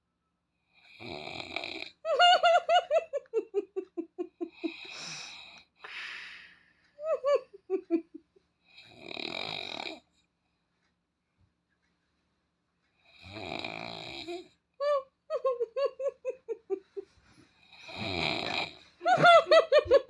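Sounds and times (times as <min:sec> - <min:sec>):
person snoring: 0:00.8 - 0:02.0, 0:04.6 - 0:06.6, 0:08.8 - 0:10.0, 0:13.1 - 0:14.5, 0:17.7 - 0:18.8.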